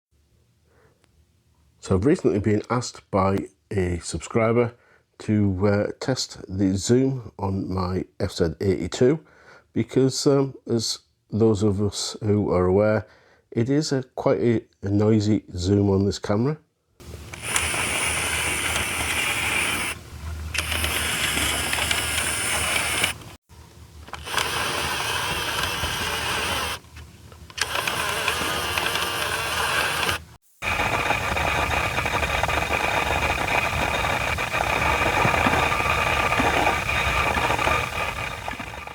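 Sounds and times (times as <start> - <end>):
camera lens whirring: 17.0 - 23.4, 24.0 - 38.9.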